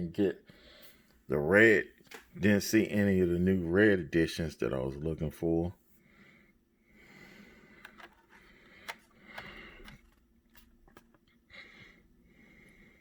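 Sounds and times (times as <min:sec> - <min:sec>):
toy packaging clicks and rustles: 0:07.8 - 0:11.3.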